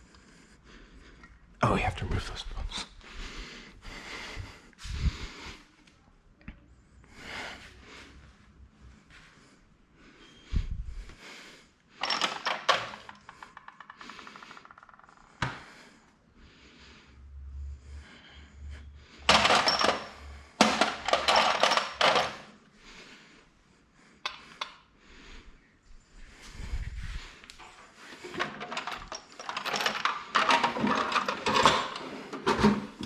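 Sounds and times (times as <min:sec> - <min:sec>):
metal tools knocking: 0:12.0 - 0:14.8
tools and parts clattering: 0:12.0 - 0:15.1, 0:19.2 - 0:22.5, 0:27.6 - 0:33.0.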